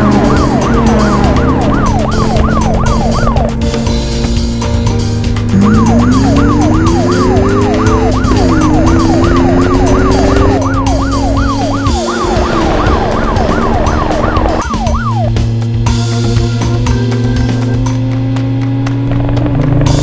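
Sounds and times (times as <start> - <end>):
cartoon siren yelp: 0.0 - 3.6, 5.5 - 15.4
rising tones: 0.0 - 4.4, 5.4 - 15.8
background music: 0.0 - 20.0.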